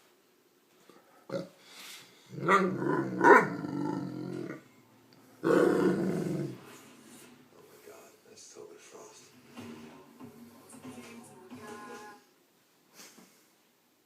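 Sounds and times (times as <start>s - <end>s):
dog burping: 2.3s - 4.6s, 5.4s - 6.6s.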